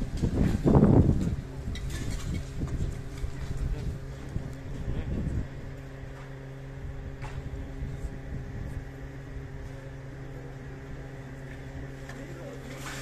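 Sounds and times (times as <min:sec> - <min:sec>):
engine droning: 0:00.0 - 0:13.0.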